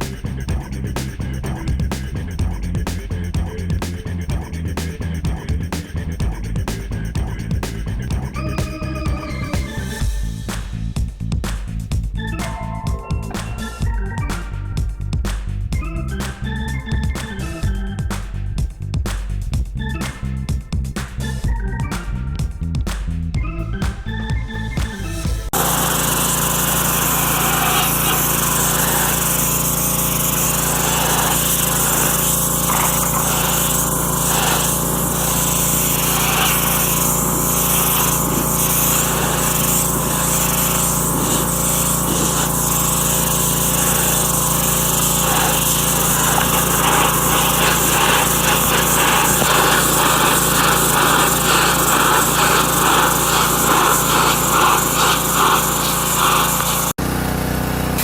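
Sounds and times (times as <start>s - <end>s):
pressure washer engine running: 0.0s - 10.6s, 25.5s - 58.0s
high-pressure water jet hissing: 25.6s - 57.0s.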